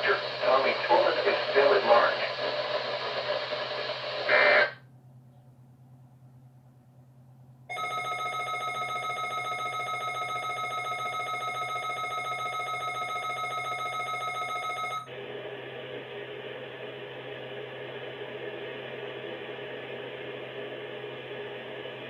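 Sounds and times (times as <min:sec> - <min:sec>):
static hiss: 0:00.0 - 0:04.8.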